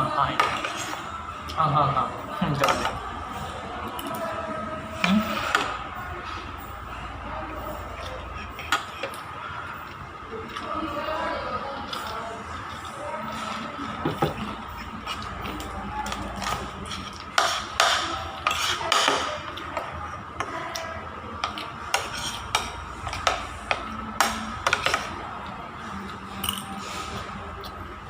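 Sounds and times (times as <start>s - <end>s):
faint music: 0.0s - 28.0s
steady background hum: 0.0s - 28.0s
cutlery and dishes clinking: 21.4s - 25.1s, 26.3s - 27.2s.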